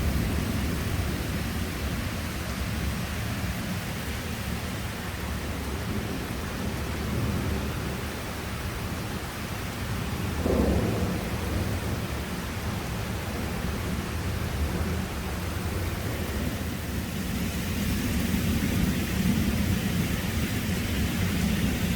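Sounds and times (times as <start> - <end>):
heavy rain: 0.0 - 21.9
wind: 0.0 - 21.9
low thunder rumble: 9.7 - 21.9
thunder clap: 10.3 - 16.9.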